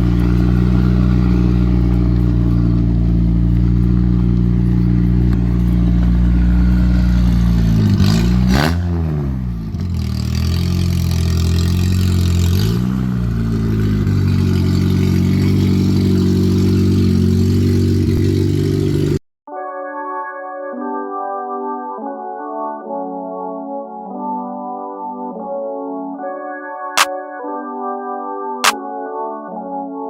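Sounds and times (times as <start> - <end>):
car engine idling and revving: 0.0 - 19.2.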